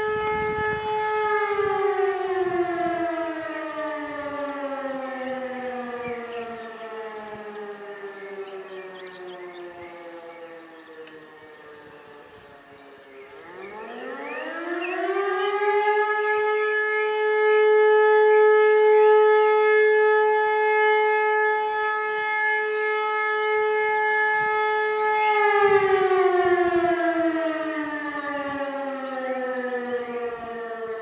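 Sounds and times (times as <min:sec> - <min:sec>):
alarm siren winding down: 0:00.0 - 0:31.0.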